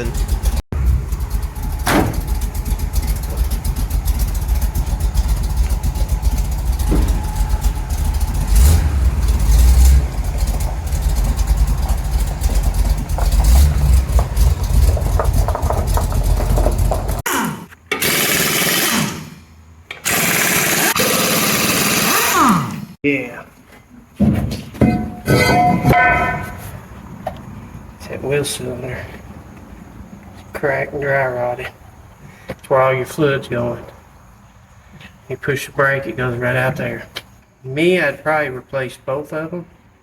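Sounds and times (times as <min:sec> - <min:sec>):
car engine rumbling: 0:00.0 - 0:17.3, 0:24.8 - 0:37.8.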